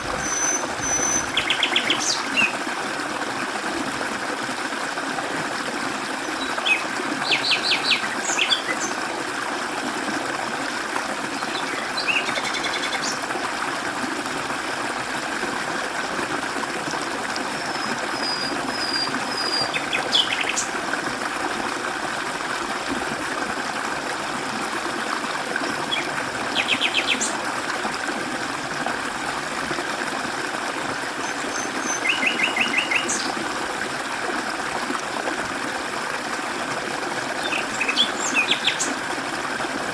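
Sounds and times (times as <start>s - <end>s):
stream running over rocks: 0.0s - 39.9s
high whistled bird call: 0.2s - 2.5s, 31.5s - 33.3s
birds trilling: 25.9s - 27.4s, 37.4s - 38.9s.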